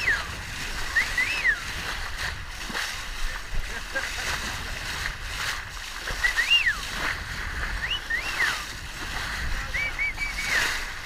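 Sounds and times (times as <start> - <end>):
water rushing past boat: 0.0 - 11.0
wind: 0.0 - 11.0
person whistling: 0.9 - 1.7, 6.1 - 6.9, 7.7 - 8.7, 9.7 - 10.8.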